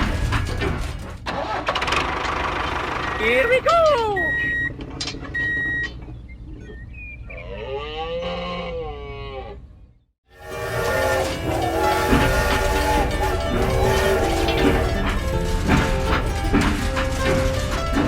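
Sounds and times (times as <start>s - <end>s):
short electronic beeps: 4.2s - 6.9s
wavering horn-like tone: 10.4s - 15.1s
layered horn-like tones: 10.4s - 18.0s.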